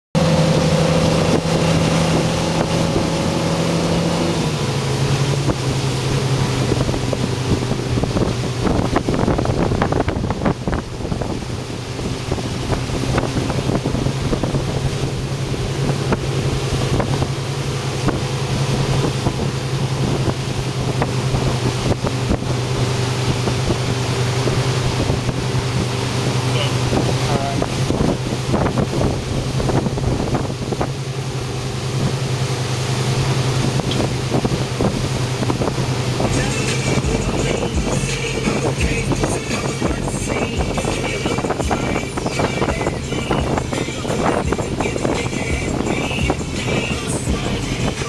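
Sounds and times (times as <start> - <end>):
wind noise: 0.2 - 32.4, 33.0 - 48.0
motorboat engine running: 0.2 - 48.0
water noise: 0.2 - 48.0.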